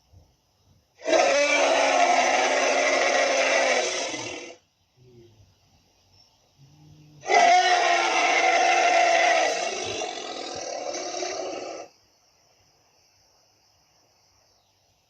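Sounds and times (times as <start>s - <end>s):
dinosaur roar: 1.0s - 4.6s, 7.2s - 11.9s.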